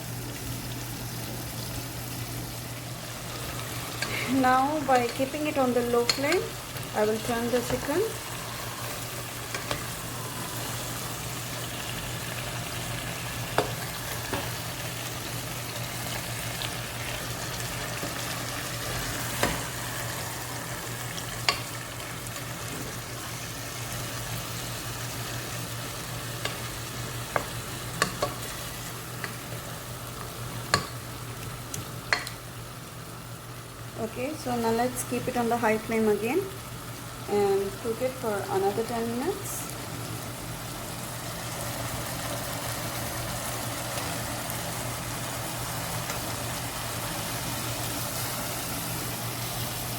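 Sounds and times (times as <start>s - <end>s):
chicken sizzling in a pan: 0.0s - 49.9s
spatula clicking against pan: 31.7s - 32.4s.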